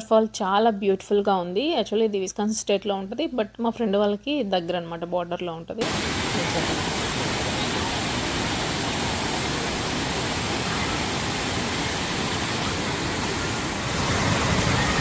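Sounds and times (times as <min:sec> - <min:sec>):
waterfall rushing: 0:05.8 - 0:15.0.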